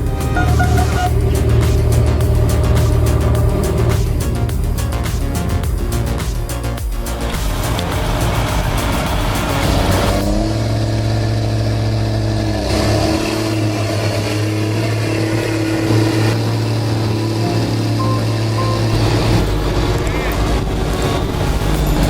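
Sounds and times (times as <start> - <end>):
heavy machine engine running: 0.0 - 6.2, 7.2 - 22.0
background music: 0.0 - 10.8, 15.7 - 22.0.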